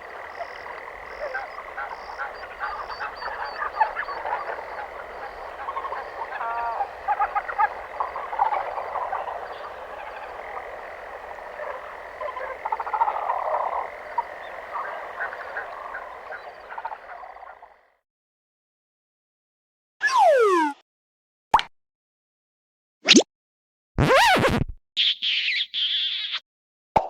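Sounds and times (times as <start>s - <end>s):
frogs croaking: 0.0s - 18.0s.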